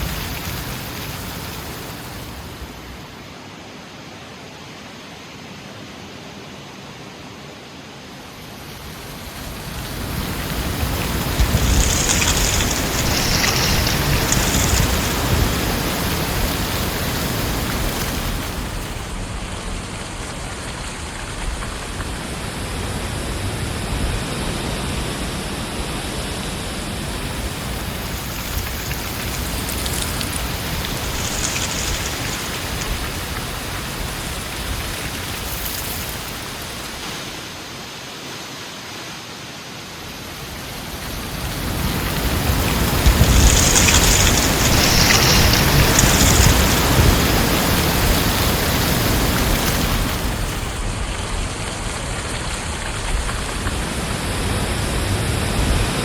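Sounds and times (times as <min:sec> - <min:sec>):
strong wind gusting: 0:00.0 - 0:03.2, 0:08.5 - 0:37.7, 0:40.2 - 0:56.0.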